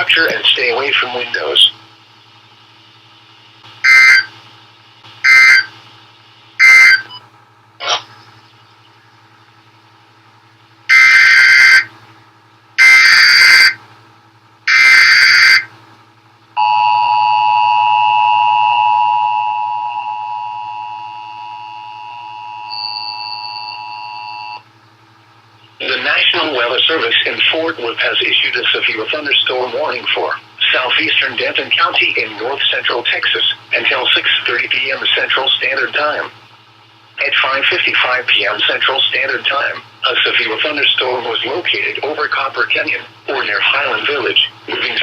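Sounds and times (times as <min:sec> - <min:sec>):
short data bursts: 0:03.8 - 0:04.3, 0:05.2 - 0:05.7, 0:06.6 - 0:07.2
warbling header bursts: 0:03.8 - 0:04.3, 0:05.2 - 0:05.7, 0:06.6 - 0:07.1.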